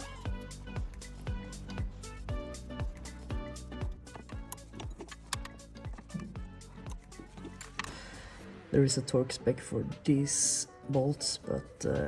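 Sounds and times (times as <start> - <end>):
low kick drum: 0.0 - 4.5
background music with steady beat: 0.0 - 12.0.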